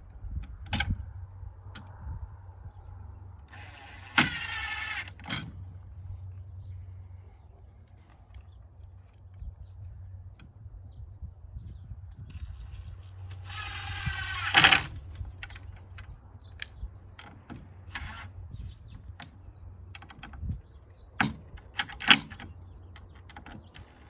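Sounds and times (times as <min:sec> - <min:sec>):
power driver whining: 0:03.4 - 0:05.8, 0:12.2 - 0:20.4.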